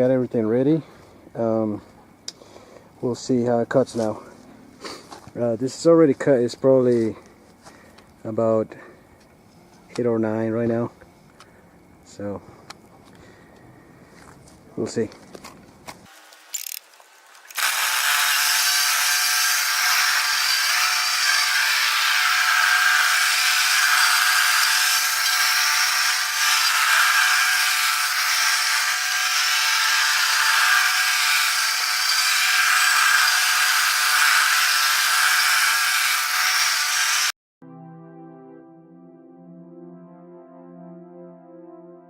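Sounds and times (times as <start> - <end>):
lawnmower cutting grass: 16.1 - 37.3.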